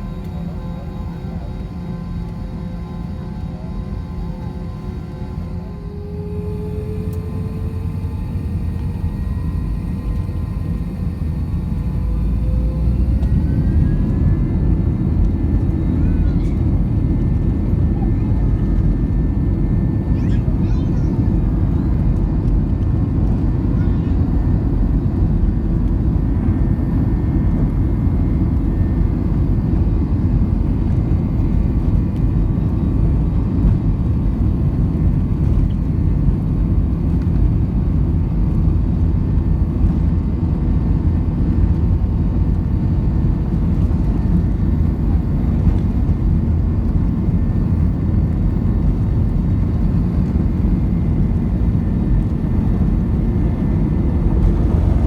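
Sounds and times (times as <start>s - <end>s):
airplane cabin rumble: 0.0s - 55.0s.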